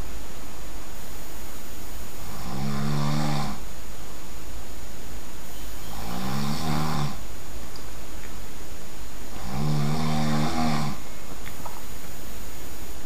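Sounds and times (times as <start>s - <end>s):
person snoring loudly: 2.2s - 3.6s, 5.9s - 7.2s, 9.3s - 11.0s.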